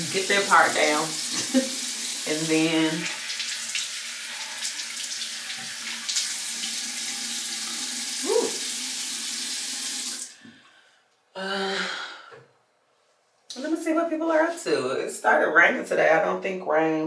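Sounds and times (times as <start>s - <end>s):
faucet running into sink: 0.0s - 10.4s.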